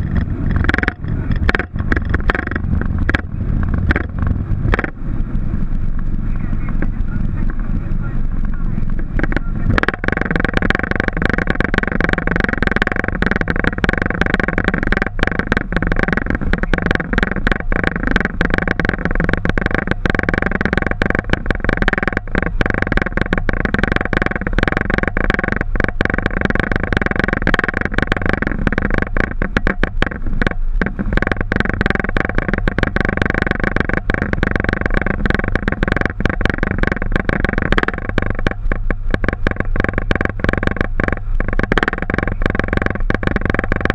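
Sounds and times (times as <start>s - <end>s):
steady whining tones: 0.0s - 43.9s
jet engines roaring: 2.6s - 9.8s.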